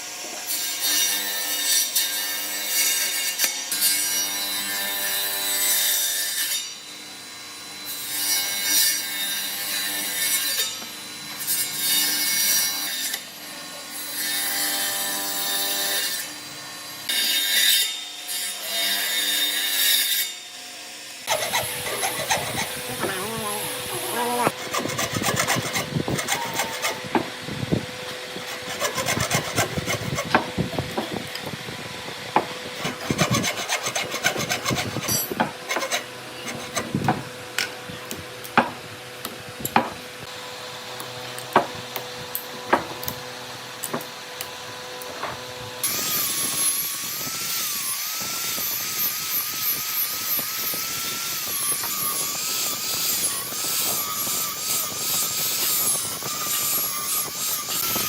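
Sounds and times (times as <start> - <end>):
hand tool rasping wood: 21.3 - 31.2, 32.4 - 37.3
wavering motor-like whine: 21.4 - 28.5.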